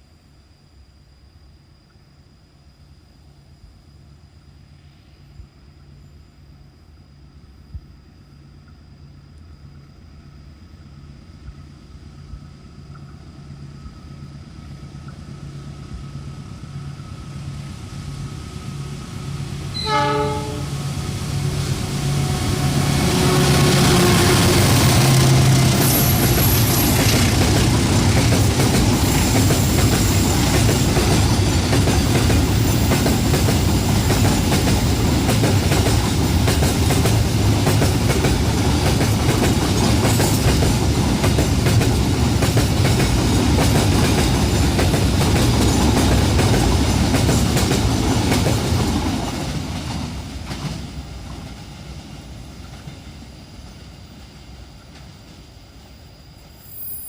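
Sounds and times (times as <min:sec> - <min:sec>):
train cars rumbling past: 0:11.8 - 0:57.0
wheels clacking on rails: 0:22.3 - 0:53.8.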